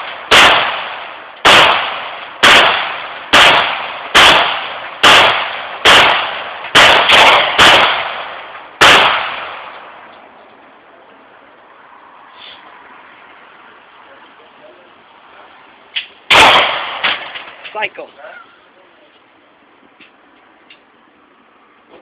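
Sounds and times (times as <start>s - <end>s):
pistol shots: 0.0s - 9.9s, 16.3s - 17.6s.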